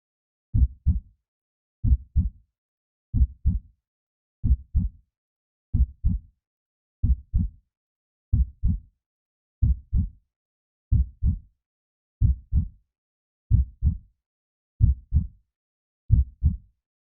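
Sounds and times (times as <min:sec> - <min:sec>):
heartbeat thumps: 0:08.4 - 0:08.8, 0:09.6 - 0:10.1, 0:10.9 - 0:11.4, 0:12.2 - 0:12.7, 0:13.5 - 0:14.0, 0:14.8 - 0:15.2, 0:16.1 - 0:16.6.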